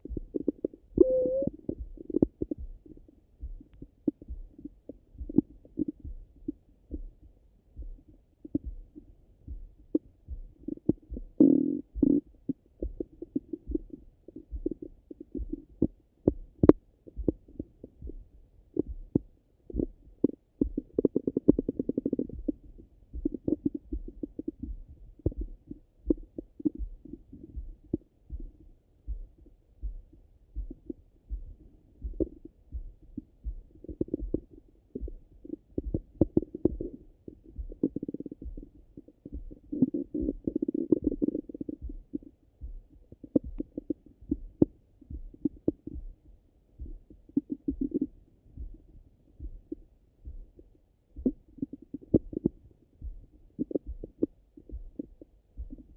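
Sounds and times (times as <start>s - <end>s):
stomach gurgling through stethoscope: 39.0s - 41.8s.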